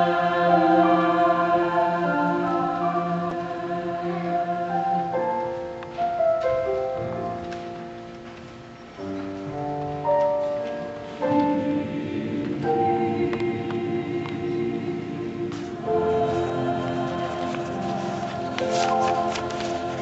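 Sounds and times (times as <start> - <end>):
vocal group singing: 0.0 - 5.5, 11.3 - 20.0
piano accompaniment: 0.0 - 20.0.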